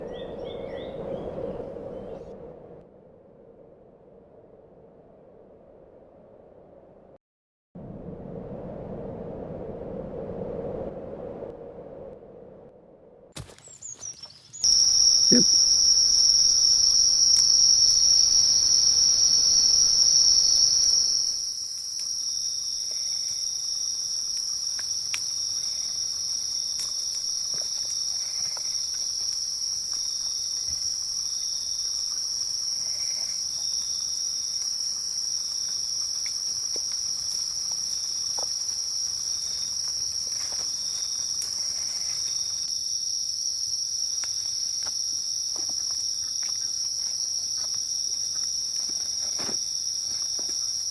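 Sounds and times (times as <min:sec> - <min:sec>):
insects chirring: 0:13.4 - 0:50.9.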